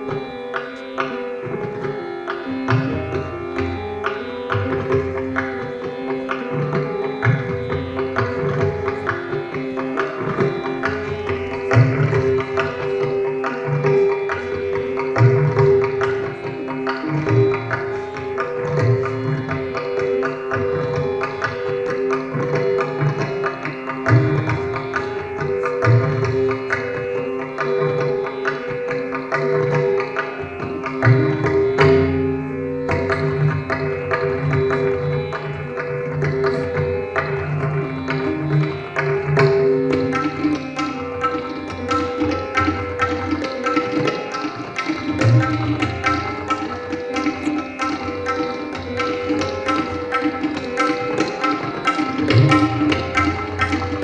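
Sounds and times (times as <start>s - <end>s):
sustained melodic accompaniment: 0.0s - 54.0s
tabla strokes: 0.0s - 54.0s.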